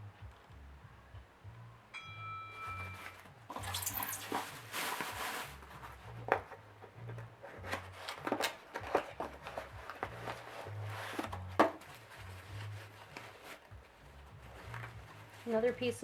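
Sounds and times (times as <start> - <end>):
short ringing clink: 2.0 - 3.2
packaging rustling and crinkling: 2.7 - 16.0.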